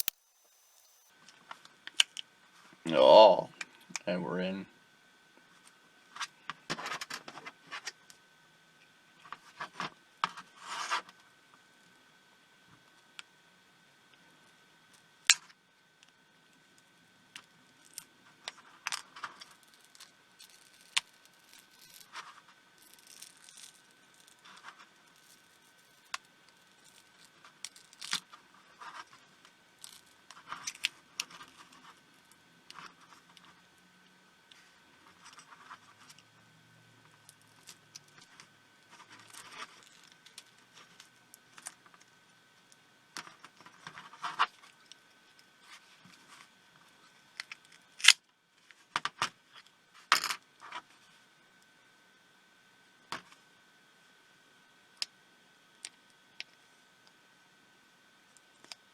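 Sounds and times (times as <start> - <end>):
small tools scraping: 0.0 - 1.1.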